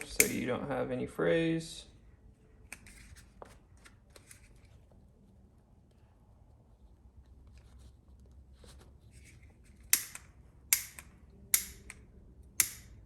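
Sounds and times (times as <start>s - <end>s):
lighter clicks: 0.1s - 0.4s, 9.9s - 12.0s, 12.6s - 13.0s.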